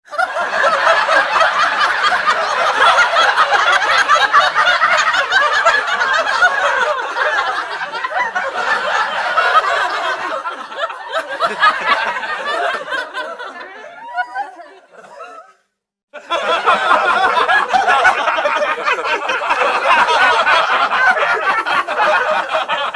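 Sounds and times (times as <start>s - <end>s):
crowd laughing and chattering: 0.1s - 15.6s, 16.2s - 22.9s.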